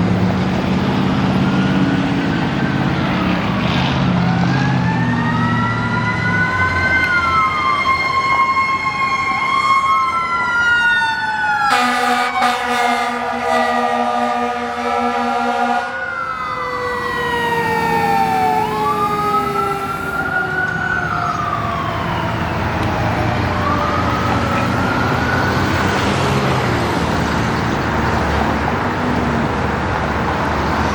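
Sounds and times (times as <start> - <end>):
truck engine and road noise: 0.0 - 30.9
air horn blast: 11.7 - 16.1.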